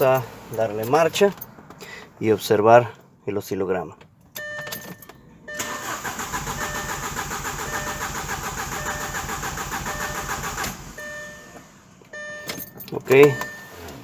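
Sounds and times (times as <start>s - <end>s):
car engine cranking: 4.3s - 14.0s
dashboard chime beeping: 4.4s - 5.8s, 11.0s - 13.8s.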